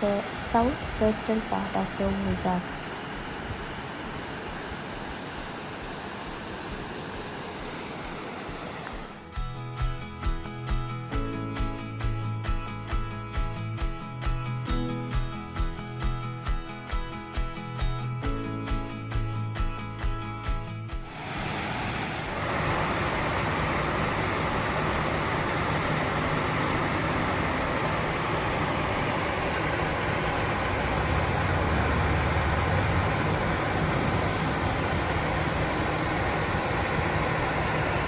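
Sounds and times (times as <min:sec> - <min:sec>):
background music: 0:09.2 - 0:21.1
falling water rushing: 0:21.0 - 0:38.0.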